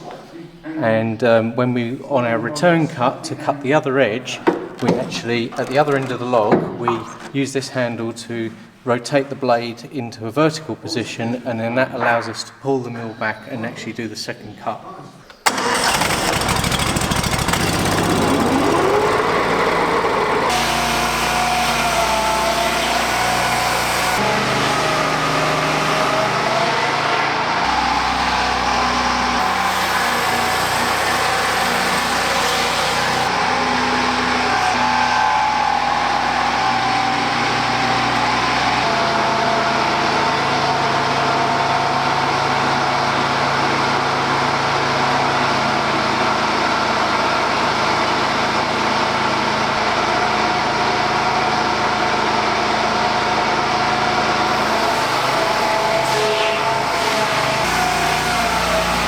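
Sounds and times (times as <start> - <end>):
sawmill engine and saw whine: 15.5 - 59.0.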